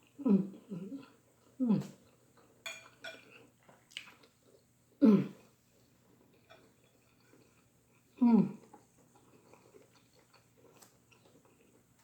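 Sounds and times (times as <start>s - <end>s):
person humming mm: 0.2s - 2.0s, 5.0s - 5.4s, 8.2s - 8.7s.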